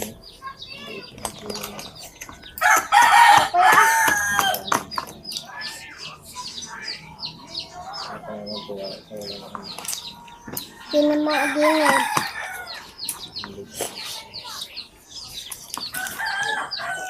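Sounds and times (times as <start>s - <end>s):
small birds chirping: 0.0s - 17.0s
rooster crowing: 2.6s - 4.6s, 11.0s - 12.9s, 15.9s - 17.0s.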